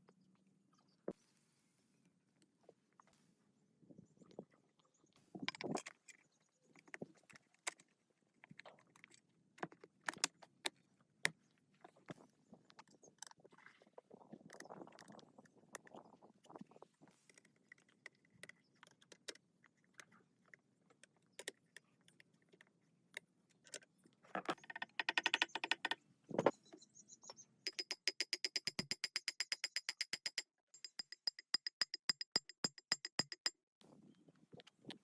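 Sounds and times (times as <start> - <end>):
small metallic ringing clicks: 24.6 - 26.0, 27.7 - 33.5.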